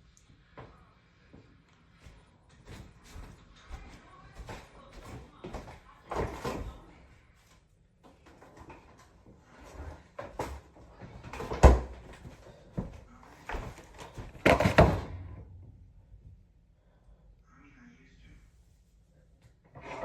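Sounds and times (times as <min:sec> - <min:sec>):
kitchen items knocking and clattering: 0:09.8 - 0:15.9.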